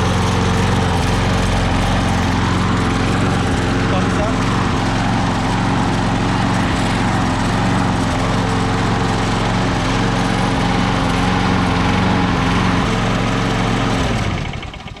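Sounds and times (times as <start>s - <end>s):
lawn mower engine running: 0.0s - 15.0s.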